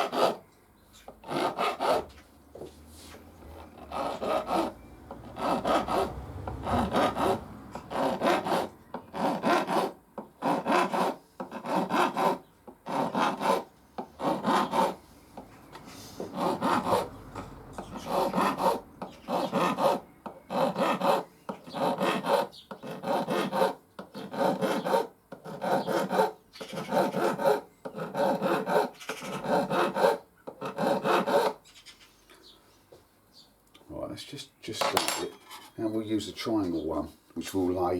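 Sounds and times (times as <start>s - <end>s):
file rasping on metal: 0.0s - 0.4s, 1.2s - 2.2s, 3.6s - 15.5s, 16.2s - 31.6s.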